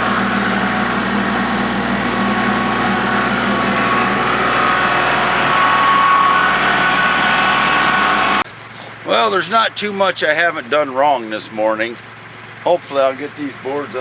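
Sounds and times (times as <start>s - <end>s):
steady high whine: 0.0s - 8.4s
forklift engine running: 0.0s - 8.7s.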